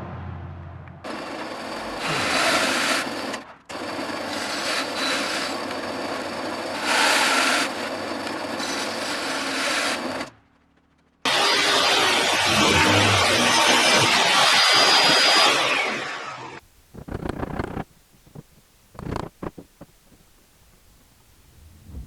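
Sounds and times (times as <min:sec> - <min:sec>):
power tool grinding wood: 0:01.5 - 0:10.3.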